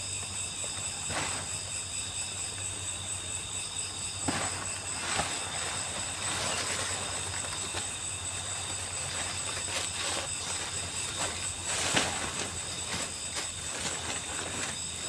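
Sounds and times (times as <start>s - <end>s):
crickets chirping: 0.0s - 15.0s.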